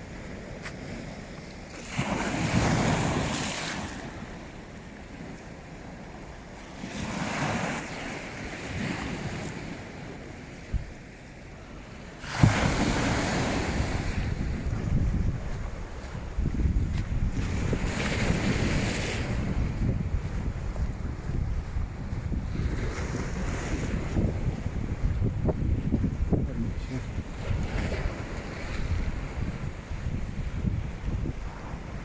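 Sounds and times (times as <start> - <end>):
waves washing on shore: 0.0 - 32.0
wind buffeting microphone: 8.5 - 11.1, 12.3 - 32.0.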